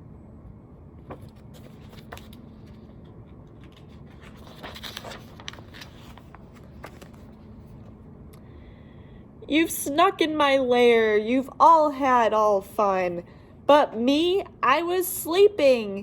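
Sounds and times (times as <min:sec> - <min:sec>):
faint room hum: 0:00.0 - 0:16.0
book page rustling and turning: 0:01.0 - 0:08.0.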